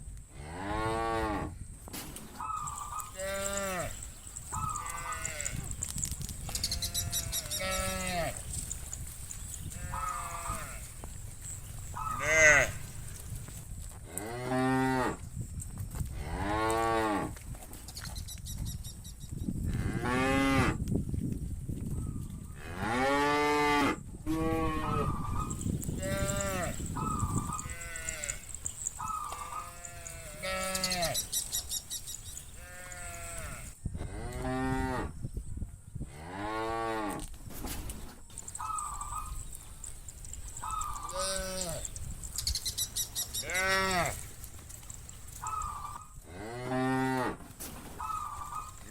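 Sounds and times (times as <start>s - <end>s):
cows mooing: 2.7s - 5.8s, 6.6s - 8.5s, 9.6s - 11.0s, 11.6s - 13.0s, 22.6s - 31.3s, 43.4s - 44.3s.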